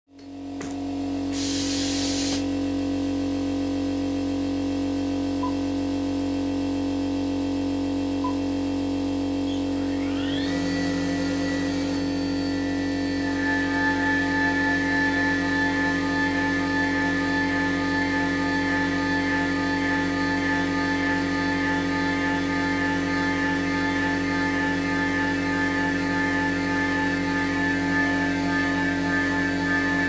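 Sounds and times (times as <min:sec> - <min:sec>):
hissing spray: 0:01.4 - 0:02.5
milling spindle whining: 0:09.2 - 0:30.0.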